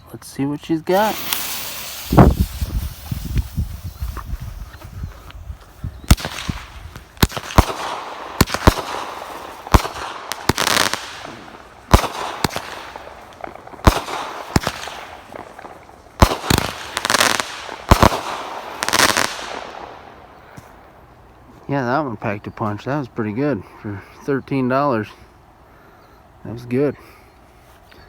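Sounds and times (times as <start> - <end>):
firework launch thumps and bangs: 0.9 - 5.0, 6.0 - 20.8
firework crackling: 0.9 - 21.2.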